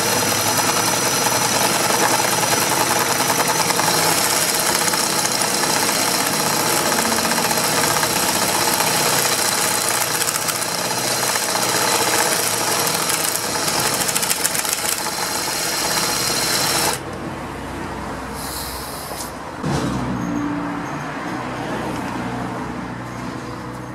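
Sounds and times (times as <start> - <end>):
impact wrench hammering: 0.0 - 17.1.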